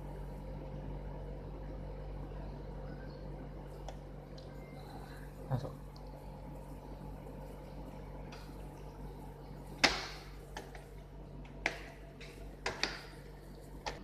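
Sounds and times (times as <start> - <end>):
steady low hum: 0.0 - 14.0
laptop parts clicking and knocking: 11.5 - 13.1.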